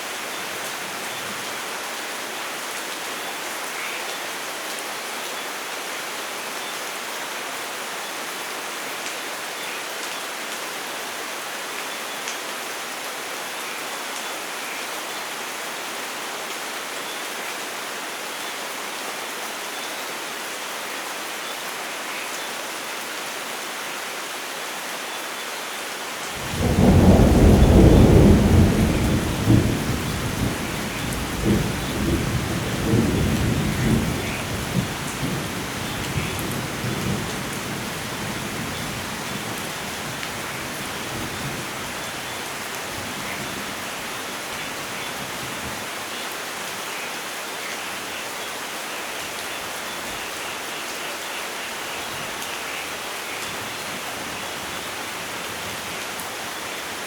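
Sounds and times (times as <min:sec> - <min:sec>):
rain hiss: 0:00.0 - 0:57.0
low thunder rumble: 0:26.4 - 0:35.4.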